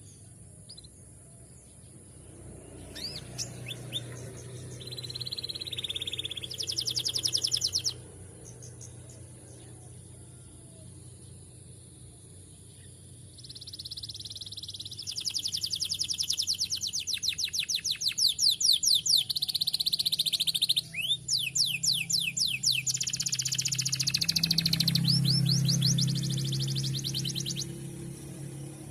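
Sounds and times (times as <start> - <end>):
canary singing trills: 0.0 - 28.9.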